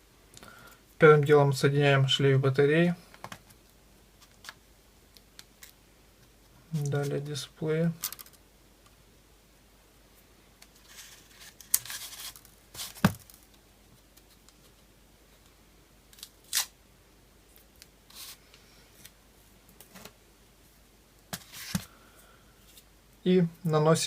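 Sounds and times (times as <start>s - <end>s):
small clicks and rustles: 8.0s - 8.4s.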